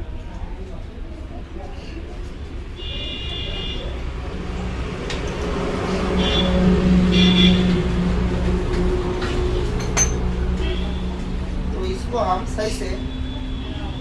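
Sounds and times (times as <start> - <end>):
horn toots: 5.8 - 7.9.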